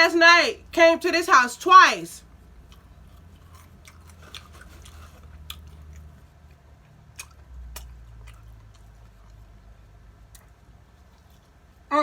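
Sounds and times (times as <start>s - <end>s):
person chewing food: 2.3s - 11.9s.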